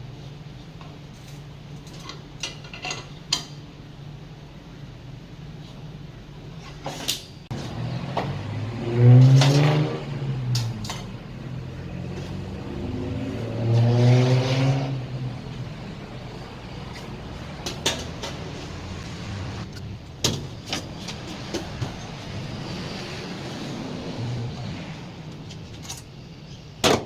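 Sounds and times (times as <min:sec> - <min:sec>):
clicks and knocks of parts handled: 0:00.8 - 0:03.6, 0:10.5 - 0:11.2, 0:16.9 - 0:18.5.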